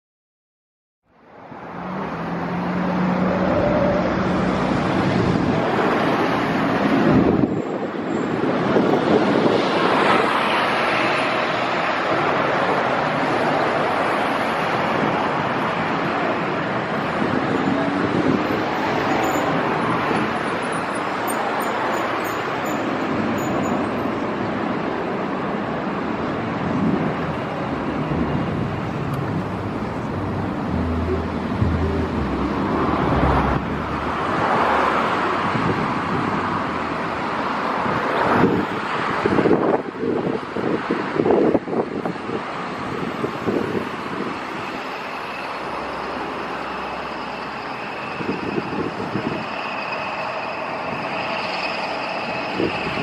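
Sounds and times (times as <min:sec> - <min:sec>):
distant engine roar: 0:26.8 - 0:37.1
deep rumble: 0:28.2 - 0:34.4.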